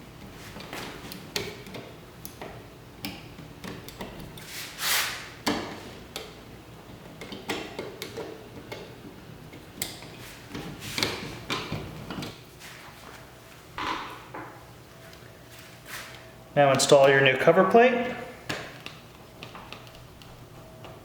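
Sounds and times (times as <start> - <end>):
metal scrape: 4.4 - 5.2.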